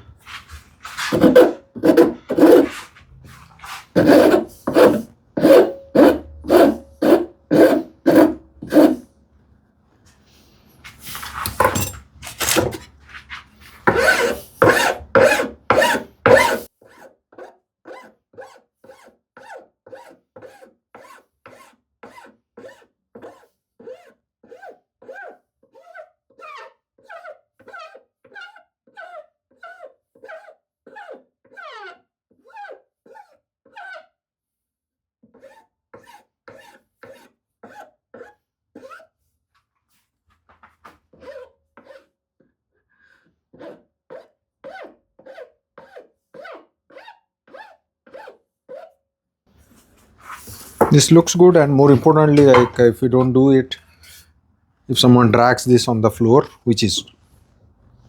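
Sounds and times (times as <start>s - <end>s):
rasp strokes on wood: 0.0s - 9.1s, 10.9s - 26.0s, 35.3s - 39.1s, 41.1s - 42.1s, 43.1s - 48.9s, 50.2s - 54.3s.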